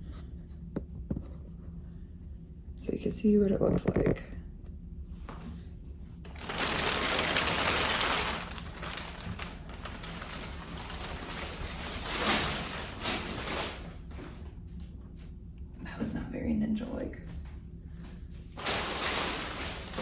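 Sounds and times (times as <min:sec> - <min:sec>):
packaging rustling and scraping: 0:06.3 - 0:14.5, 0:18.6 - 0:20.0.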